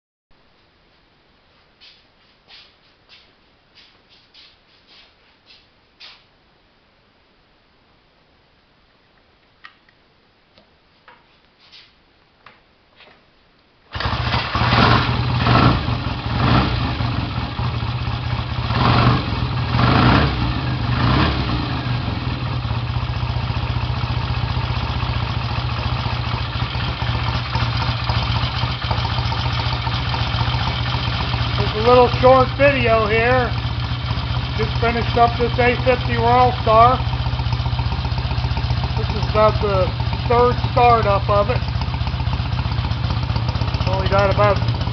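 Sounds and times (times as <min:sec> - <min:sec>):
motorcycle engine starting and idling: 0:13.9 - 0:44.9.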